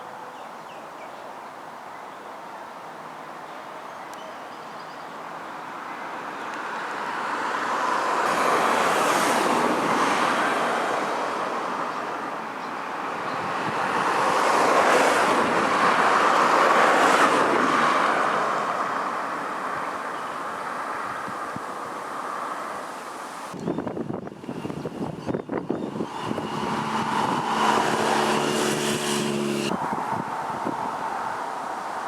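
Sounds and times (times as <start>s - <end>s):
outdoor rushing noise: 23.8s - 31.8s.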